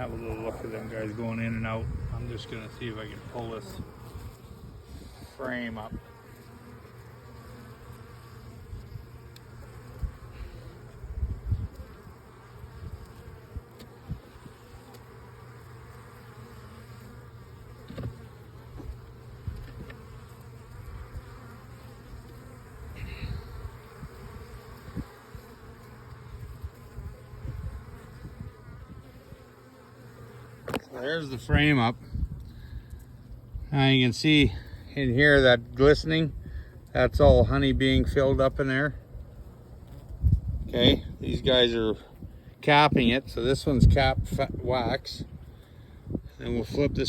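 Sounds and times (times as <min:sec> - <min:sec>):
bees buzzing in a swarm: 0:00.0 - 0:47.0
wooden hive frame knocks and scrapes: 0:17.8 - 0:20.6, 0:30.5 - 0:31.0.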